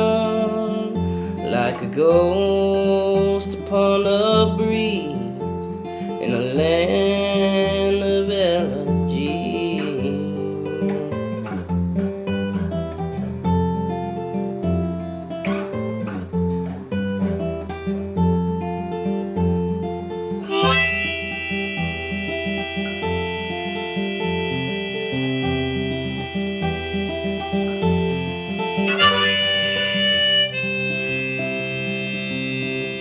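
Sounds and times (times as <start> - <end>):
person singing: 0.0 - 11.4, 20.4 - 33.0
acoustic guitar strumming: 0.0 - 33.0.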